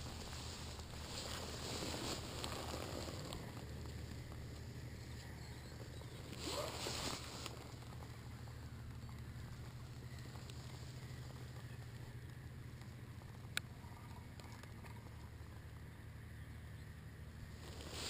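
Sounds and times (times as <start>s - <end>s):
rustle with rising squeak: 0.0s - 12.1s
motorcycle engine idling: 0.0s - 17.8s.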